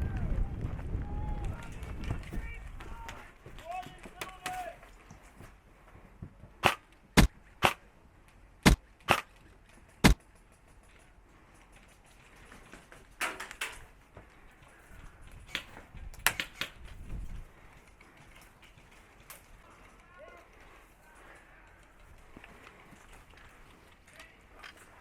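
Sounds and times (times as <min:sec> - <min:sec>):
airsoft rifle shots: 0:06.6 - 0:07.9, 0:08.6 - 0:09.4
knocks and rustles: 0:08.6 - 0:19.9.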